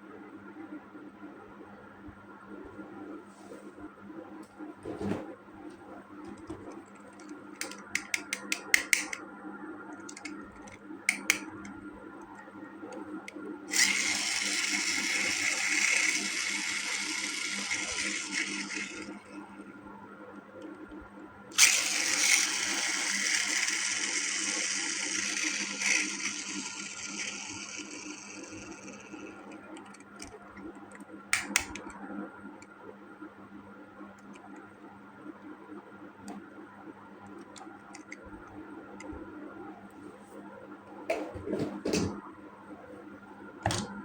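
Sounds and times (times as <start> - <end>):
sharp plastic clicks: 7.2 - 9.2, 10.0 - 11.7, 31.0 - 32.0
toy mechanism whirring: 13.7 - 19.4, 21.5 - 30.3.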